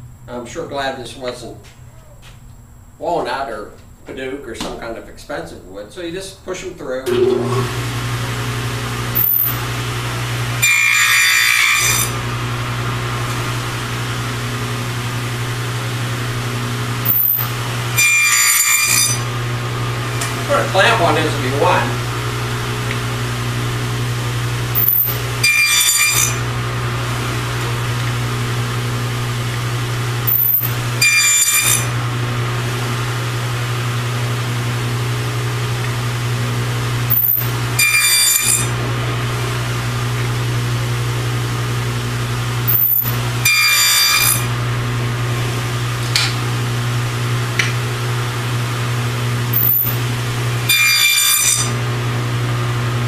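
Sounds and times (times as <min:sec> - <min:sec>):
table saw running: 0:07.1 - 0:53.0
saw blade cutting wood: 0:09.2 - 0:09.6, 0:10.6 - 0:12.2, 0:17.0 - 0:19.3, 0:24.8 - 0:26.5, 0:30.3 - 0:32.0, 0:37.1 - 0:38.8, 0:42.7 - 0:44.5, 0:49.5 - 0:50.0, 0:50.7 - 0:51.8.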